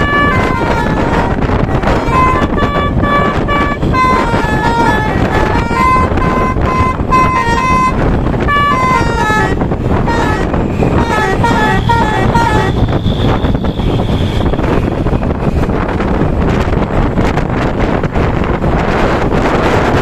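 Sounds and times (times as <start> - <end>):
truck horn playing a tune: 0.0 - 14.6
steady low rumble: 0.0 - 20.0.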